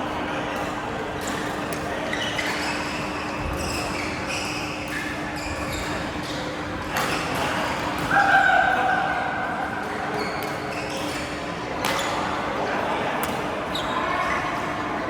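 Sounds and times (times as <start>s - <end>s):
shoes squeaking on court floor: 1.2s - 8.0s, 9.9s - 12.4s, 13.3s - 14.9s.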